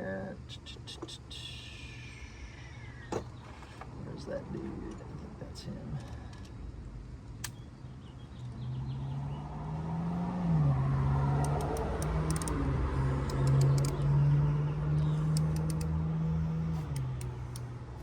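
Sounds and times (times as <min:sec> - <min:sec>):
metallic clicks of hand tools: 0:11.4 - 0:12.6, 0:13.2 - 0:14.1, 0:15.2 - 0:16.0
motor humming: 0:11.4 - 0:18.0.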